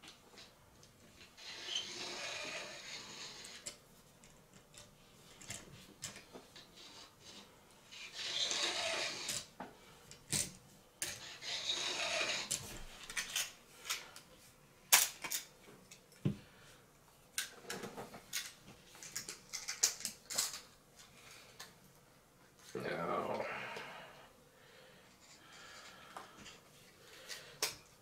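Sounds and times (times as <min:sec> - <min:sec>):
small parts clicking and knocking: 0:03.4 - 0:06.3, 0:12.0 - 0:14.0, 0:14.9 - 0:16.3, 0:17.4 - 0:20.7.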